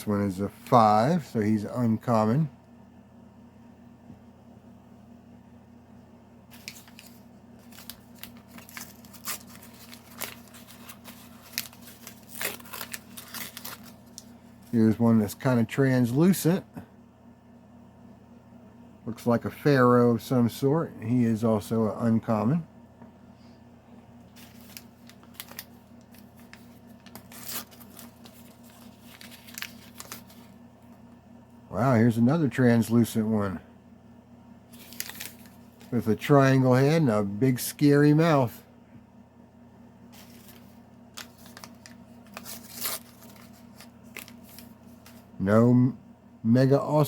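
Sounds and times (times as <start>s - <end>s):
faint hum: 0.0s - 47.0s
plastic packaging crinkling and tearing: 6.5s - 14.8s, 24.4s - 30.6s, 34.7s - 36.0s, 40.2s - 45.3s.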